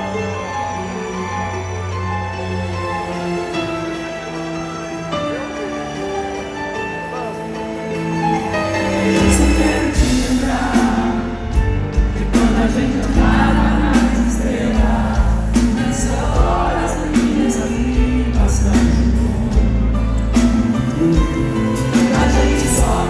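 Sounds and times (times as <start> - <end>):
live band playing pop ballad: 2.0 - 23.0
person singing: 8.4 - 23.0
heavy bass and drums: 9.2 - 23.0.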